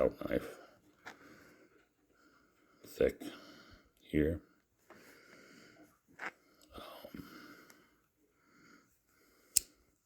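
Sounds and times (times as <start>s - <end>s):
breathing: 0.5s - 4.0s, 4.8s - 10.0s
knife blade metallic click: 9.5s - 9.7s.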